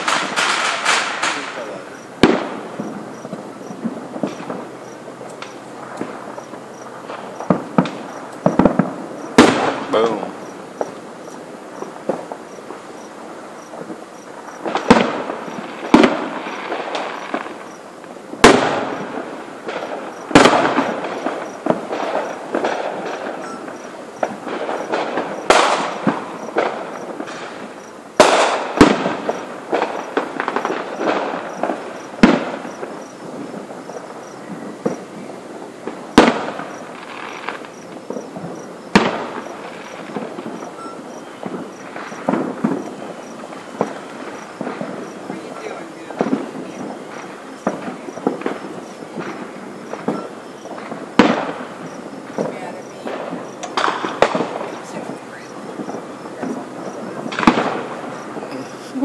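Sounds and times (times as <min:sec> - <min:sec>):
crackling pops: 0:00.0 - 0:59.0
fireworks booming: 0:00.0 - 0:59.0.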